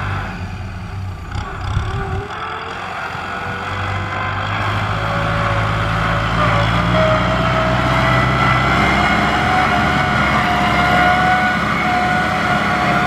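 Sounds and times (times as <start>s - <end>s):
heavy farm machinery engine: 0.0s - 13.0s
low engine hum: 0.0s - 13.0s.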